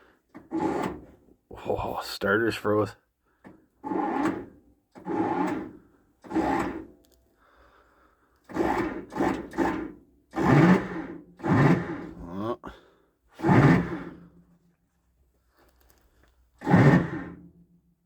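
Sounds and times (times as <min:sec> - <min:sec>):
starter motor whirring: 0:00.3 - 0:01.3, 0:03.7 - 0:07.1, 0:08.4 - 0:12.4, 0:13.4 - 0:14.4, 0:16.6 - 0:17.6.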